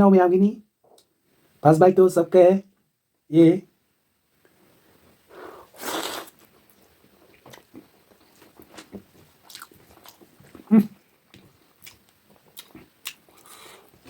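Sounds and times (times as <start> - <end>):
person biting food: 5.7 - 6.5
wet chewing: 5.8 - 14.0
person humming mm: 10.7 - 11.0.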